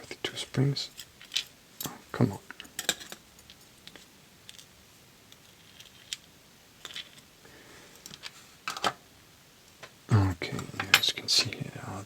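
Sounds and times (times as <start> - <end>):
small metal parts clicking: 0.9 - 4.7, 5.3 - 7.3.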